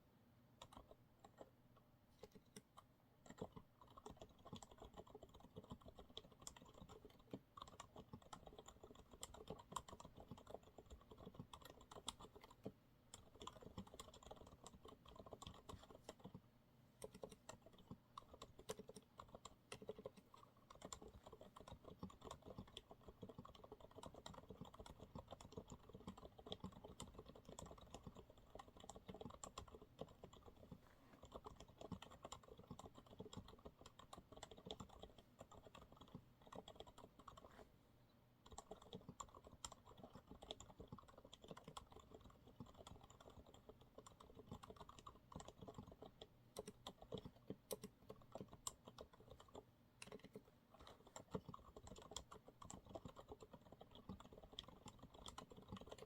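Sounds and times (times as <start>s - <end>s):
soft keyboard typing: 0.6s - 37.8s, 38.4s - 56.0s.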